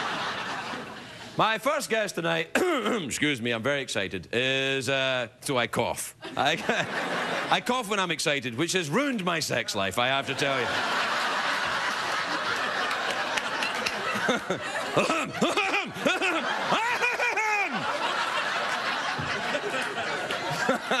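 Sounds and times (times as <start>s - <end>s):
studio audience laughing: 0.0s - 1.4s, 6.2s - 7.7s, 10.2s - 21.0s
person laughing in short bursts: 14.3s - 17.8s.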